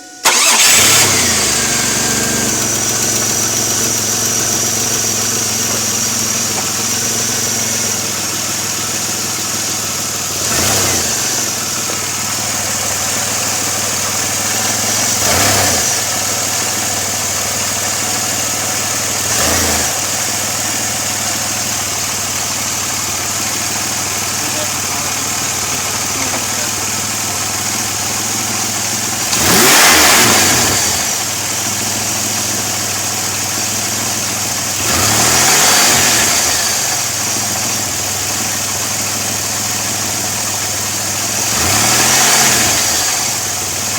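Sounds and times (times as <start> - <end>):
car engine idling: 0.0 - 43.9
engine throttle blips: 0.0 - 43.9.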